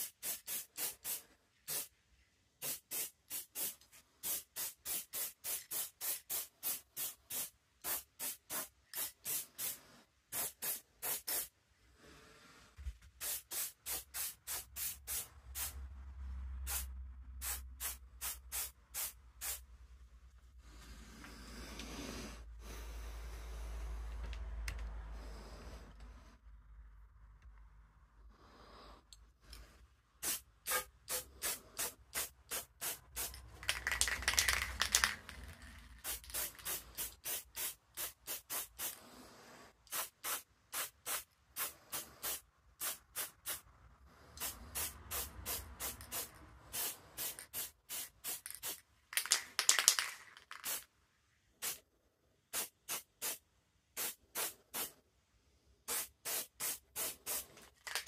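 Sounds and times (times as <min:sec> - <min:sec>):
spray paint can bursts: 0:00.0 - 0:01.9, 0:02.6 - 0:11.5, 0:13.2 - 0:15.8, 0:30.2 - 0:39.0, 0:39.9 - 0:43.6, 0:44.4 - 0:50.9, 0:52.5 - 0:53.4, 0:54.0 - 0:55.0, 0:55.9 - 0:58.0.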